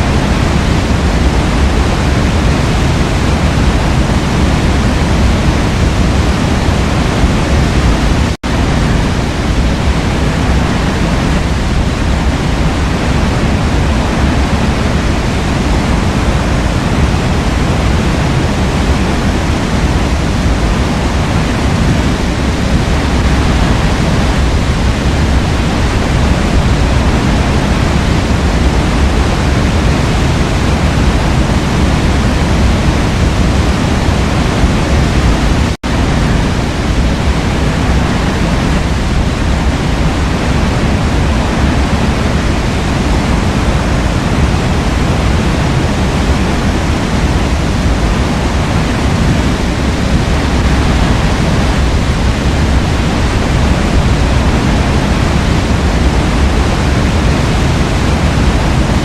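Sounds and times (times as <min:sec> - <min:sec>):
waterfall rushing: 0:00.0 - 0:59.0.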